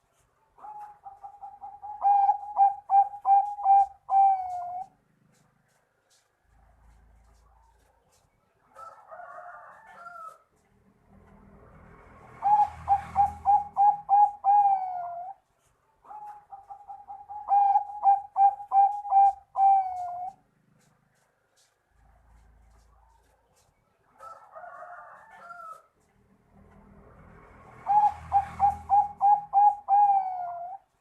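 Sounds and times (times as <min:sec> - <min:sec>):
dove cooing: 0:00.6 - 0:05.4, 0:12.3 - 0:15.4, 0:16.0 - 0:20.9, 0:27.7 - 0:31.0.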